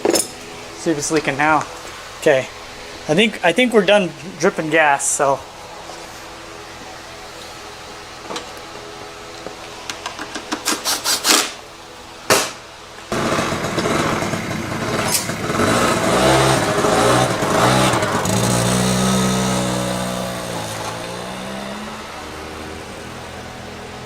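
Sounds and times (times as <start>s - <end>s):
sharp engine pops: 12.3s - 12.6s
scooter engine cranking and running: 13.1s - 24.0s.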